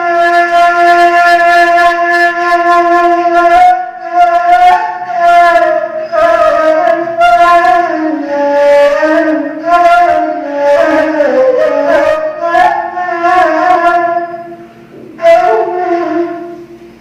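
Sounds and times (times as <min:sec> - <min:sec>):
reed flute playing solo: 0:15.2 - 0:16.8.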